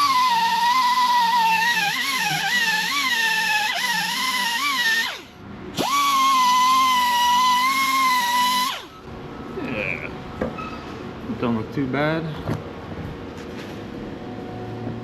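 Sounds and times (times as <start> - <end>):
electric grinder grinding metal: 0.0 - 8.9.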